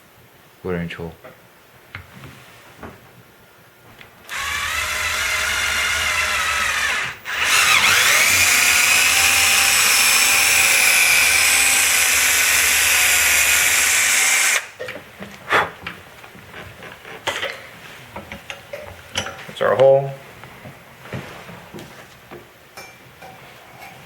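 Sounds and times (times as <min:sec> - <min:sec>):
power drill boring through metal: 0:04.3 - 0:14.7.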